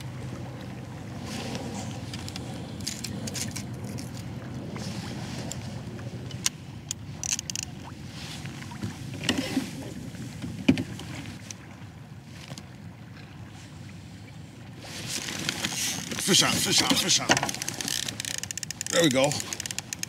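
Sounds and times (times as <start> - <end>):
water sloshing against kayak hull: 0.0 - 20.0
gear knocking on boat: 15.4 - 20.0.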